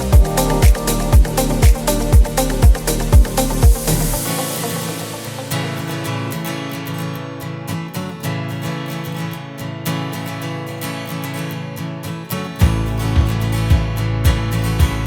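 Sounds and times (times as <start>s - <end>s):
bass beat: 0.0s - 4.3s, 12.6s - 15.0s
strummed acoustic guitar: 0.0s - 15.0s.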